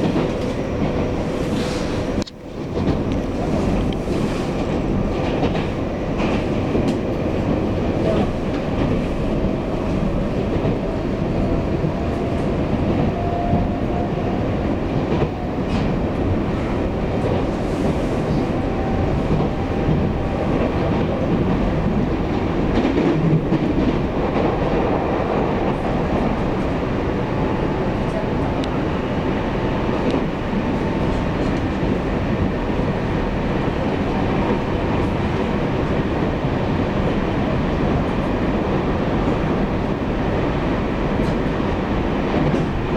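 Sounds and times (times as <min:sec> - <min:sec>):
train wheels rumbling on track: 0:00.0 - 0:42.9.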